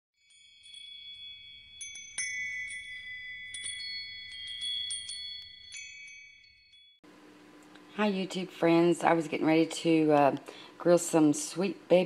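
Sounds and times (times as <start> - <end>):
metal chimes tinkling: 0.2 - 7.0.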